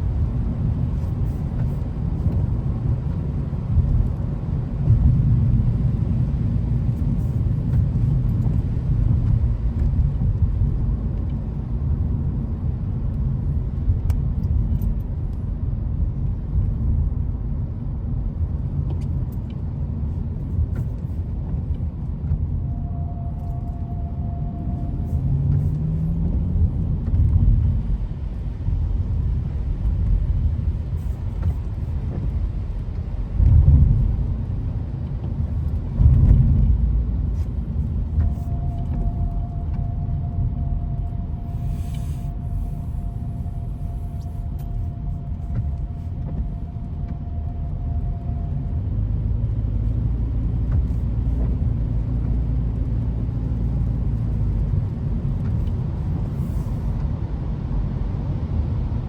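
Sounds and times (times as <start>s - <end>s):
car engine and tyre rumble: 0.0s - 59.0s
short steady tone: 22.6s - 26.2s, 38.0s - 48.8s.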